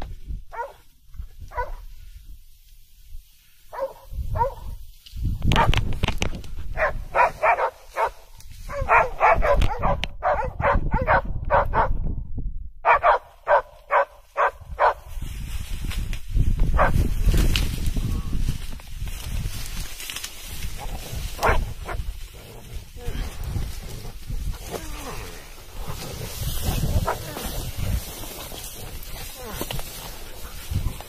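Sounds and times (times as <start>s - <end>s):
dog barking: 0.5s - 0.8s, 1.5s - 1.8s, 3.7s - 4.7s, 6.8s - 12.0s, 12.8s - 15.0s, 16.8s - 17.0s, 21.4s - 22.0s.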